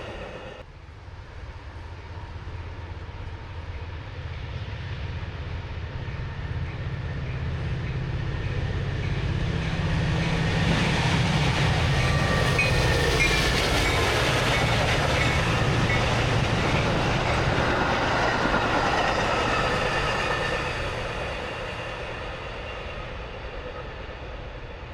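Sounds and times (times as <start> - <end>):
train rumbling on rails: 0.0 - 24.9.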